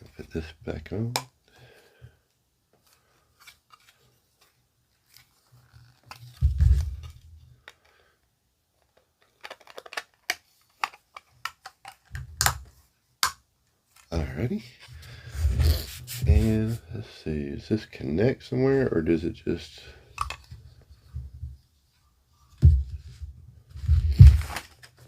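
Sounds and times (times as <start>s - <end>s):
plastic parts clicking and tapping: 6.0s - 7.9s, 8.8s - 13.4s, 20.1s - 20.6s.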